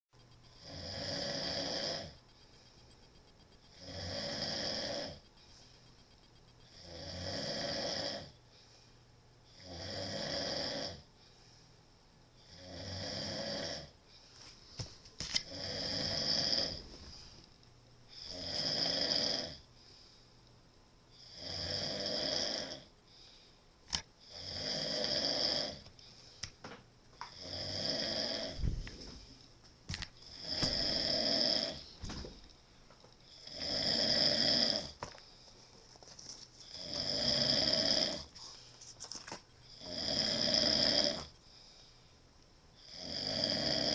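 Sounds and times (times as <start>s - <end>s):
person snoring loudly: 0.6s - 2.2s, 3.8s - 5.2s, 6.8s - 8.3s, 9.5s - 11.0s, 12.4s - 13.9s, 15.5s - 16.9s, 18.1s - 19.6s, 21.2s - 22.9s, 24.2s - 25.8s, 27.3s - 28.9s, 30.3s - 31.9s, 33.3s - 35.0s, 36.6s - 38.4s, 39.7s - 41.3s, 42.8s - 43.9s.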